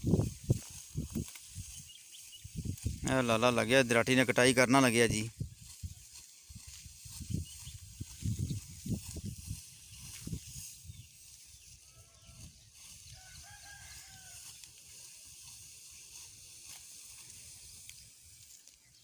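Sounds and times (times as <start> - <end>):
distant rooster crowing: 11.8 - 14.6.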